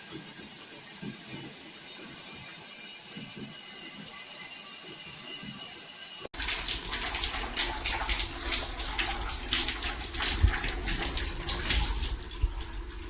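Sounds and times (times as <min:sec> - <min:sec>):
water gushing from shower hose: 0:06.3 - 0:13.0.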